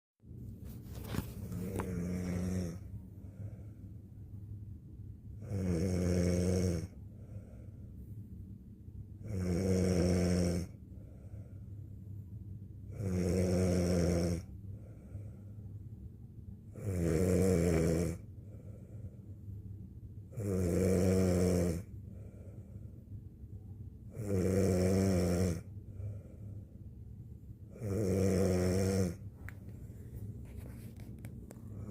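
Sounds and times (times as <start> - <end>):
quiet breathing: 0.3 - 5.6, 6.3 - 9.2, 10.0 - 13.1, 13.7 - 20.3, 21.2 - 24.2, 24.8 - 31.9
woman snoring: 1.1 - 3.7, 5.4 - 7.6, 9.2 - 10.8, 12.9 - 15.2, 16.7 - 18.2, 20.3 - 22.5, 24.1 - 26.4, 27.7 - 29.2.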